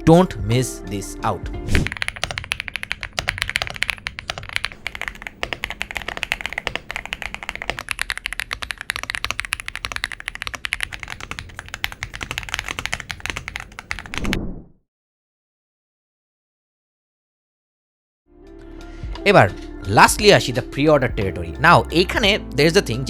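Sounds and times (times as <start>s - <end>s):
mechanical keyboard typing: 1.8s - 14.4s.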